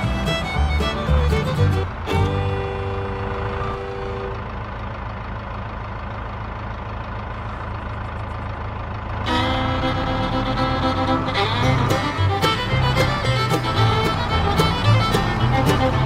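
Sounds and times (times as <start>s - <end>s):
fiddle music: 0.0s - 4.7s, 9.1s - 16.0s
low engine rumble: 0.0s - 16.0s.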